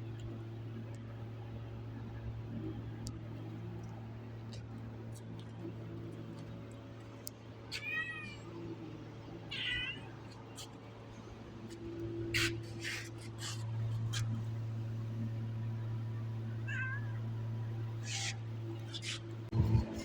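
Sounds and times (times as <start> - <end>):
steady low hum: 0.0 - 20.0
cat meowing: 7.7 - 8.4, 9.5 - 10.1, 16.6 - 17.2.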